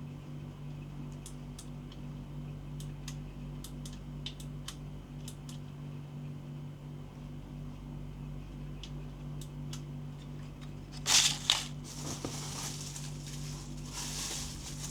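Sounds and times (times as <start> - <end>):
steady low hum: 7.1 - 14.9
clicks and taps handling packaging: 11.0 - 14.9.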